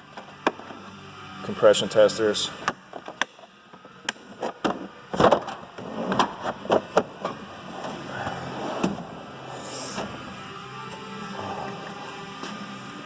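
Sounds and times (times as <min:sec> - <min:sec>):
tool cases knocking and clunking: 0:02.7 - 0:09.0.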